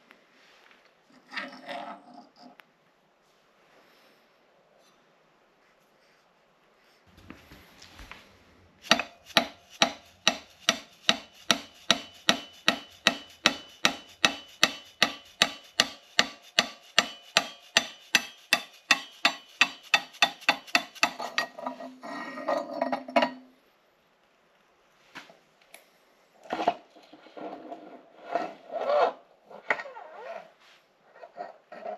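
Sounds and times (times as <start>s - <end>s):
hammer blows on metal: 8.8s - 21.2s
rasping scraping: 8.8s - 23.3s.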